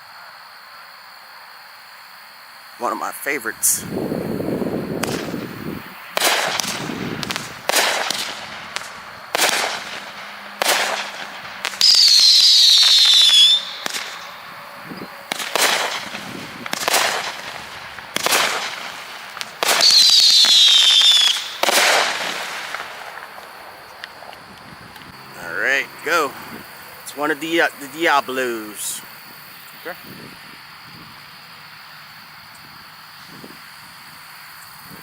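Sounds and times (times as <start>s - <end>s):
fireworks shots: 3.6s - 29.1s
firework whistle falling in pitch: 11.6s - 17.2s, 19.5s - 22.4s.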